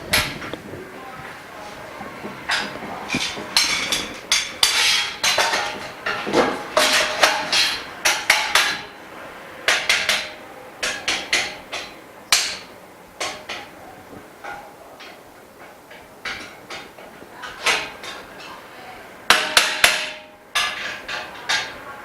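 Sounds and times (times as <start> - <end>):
sharp knocks of frame bars: 2.5 - 9.0, 9.7 - 13.8, 19.3 - 21.8.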